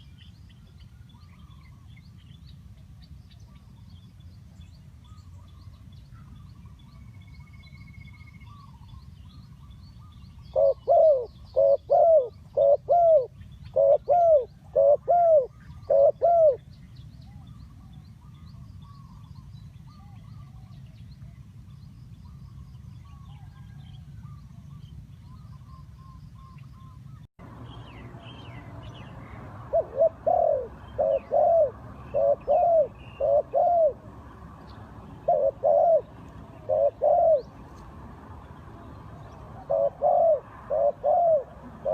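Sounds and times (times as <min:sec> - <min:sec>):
small birds chirping: 0:00.0 - 0:41.9
dove cooing: 0:10.4 - 0:16.7, 0:29.6 - 0:34.1, 0:35.1 - 0:37.6, 0:39.5 - 0:41.9.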